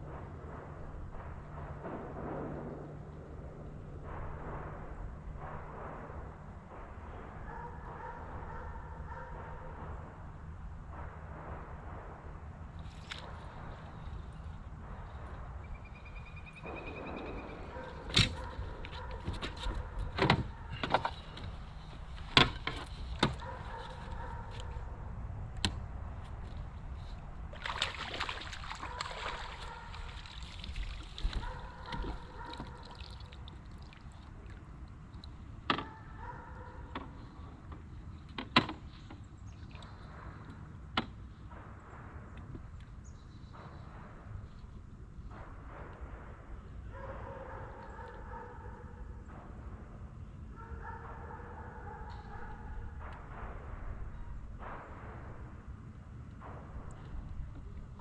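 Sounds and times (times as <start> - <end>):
water sloshing around boat: 27.0 - 40.5.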